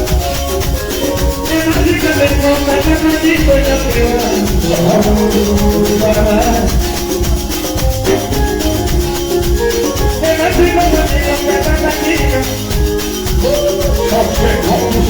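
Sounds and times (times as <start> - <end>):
heavy bass: 0.0 - 15.0
live band playing dance music: 0.0 - 15.0
shaker rhythm: 0.0 - 15.0.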